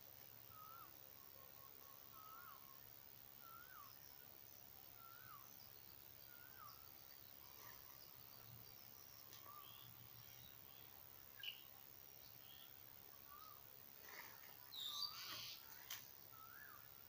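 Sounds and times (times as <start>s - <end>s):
high bird chirps: 14.7s - 15.8s.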